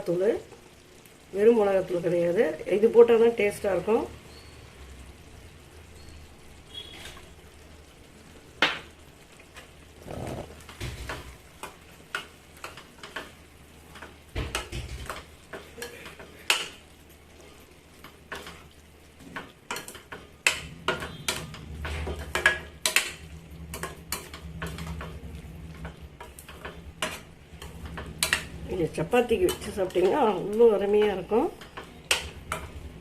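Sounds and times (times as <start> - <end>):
light sizzle: 0.0 - 33.0
spoon scraping and knocking pan: 10.0 - 16.8, 19.3 - 28.6.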